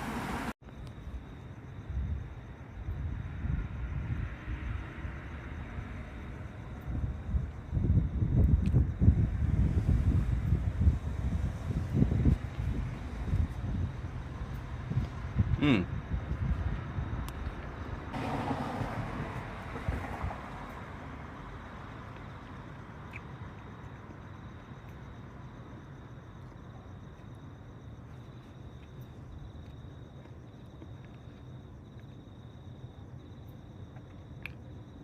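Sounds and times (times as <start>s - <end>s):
insects trilling: 12.9s - 35.0s.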